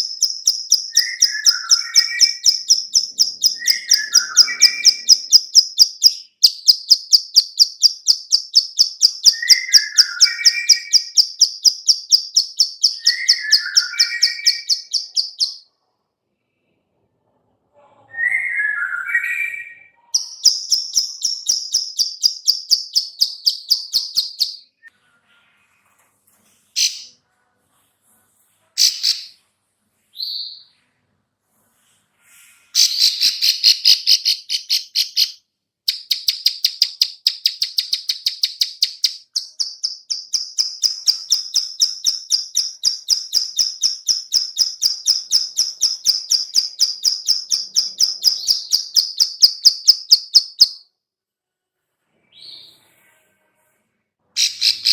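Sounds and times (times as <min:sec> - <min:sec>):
low warbled bird phrase: 0:03.2 - 0:05.4.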